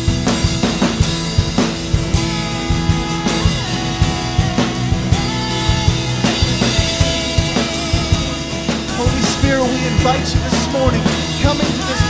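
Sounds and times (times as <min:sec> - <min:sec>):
rock drum kit beat: 0:00.0 - 0:12.0
sustained keyboard or guitar chords: 0:00.0 - 0:12.0
wavering melody line: 0:00.0 - 0:12.0.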